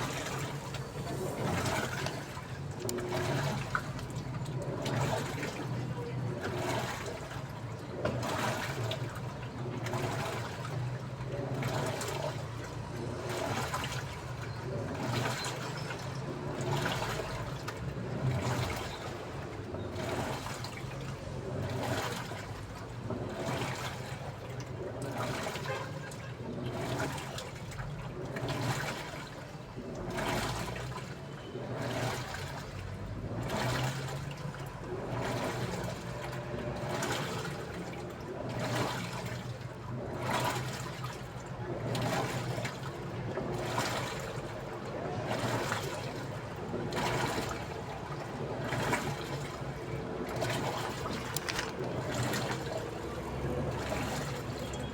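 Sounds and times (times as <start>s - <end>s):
low motor hum: 0.0s - 15.4s, 29.7s - 54.9s
water sloshing in washing machine: 0.0s - 54.9s.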